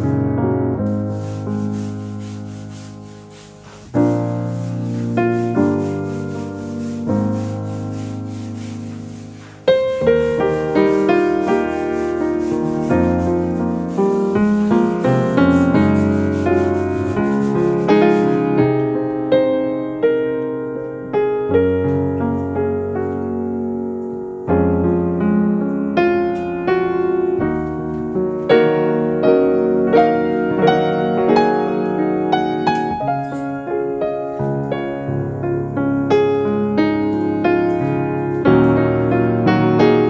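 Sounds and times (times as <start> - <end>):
soft slow piano music: 0.0 - 40.0.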